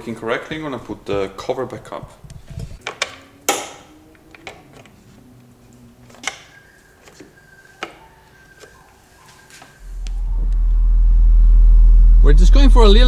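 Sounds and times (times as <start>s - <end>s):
engine cover clicks and knocks: 2.8s - 4.9s.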